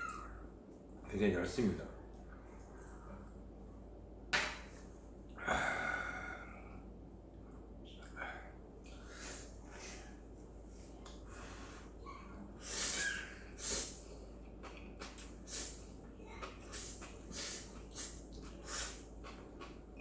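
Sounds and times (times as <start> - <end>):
person slurping noodles: 16.5 - 19.4.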